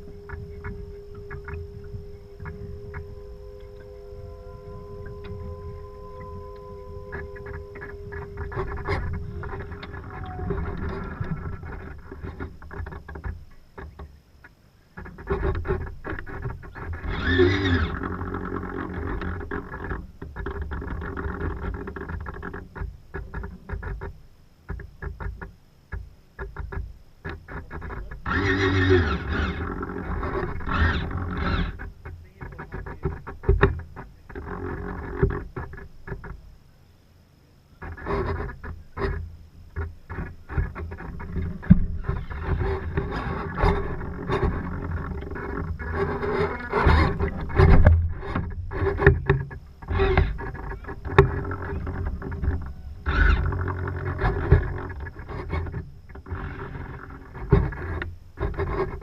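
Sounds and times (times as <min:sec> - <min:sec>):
wavering pitched sound: 0:00.0 - 0:12.6
wind buffeting microphone: 0:00.0 - 0:13.5.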